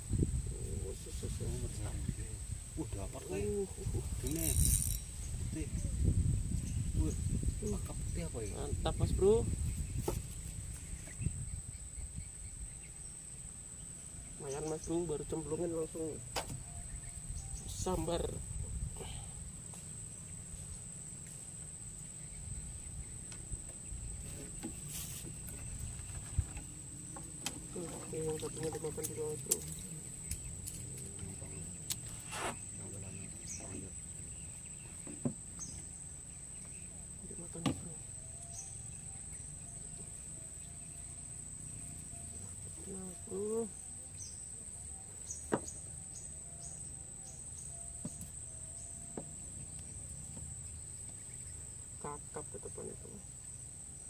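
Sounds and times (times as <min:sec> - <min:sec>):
insect high-pitched drone: 0:00.0 - 0:54.0
short high insect chirps: 0:04.1 - 0:08.2, 0:37.9 - 0:51.6.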